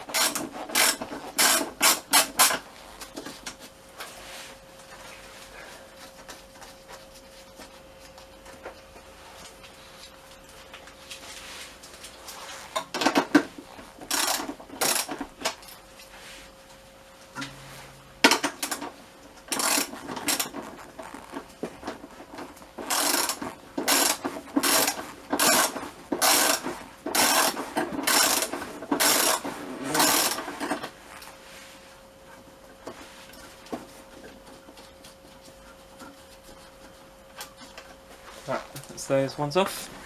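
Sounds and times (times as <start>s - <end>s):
ratchet wrench clicking: 22.9s - 26.6s, 27.2s - 29.4s, 30.0s - 30.4s.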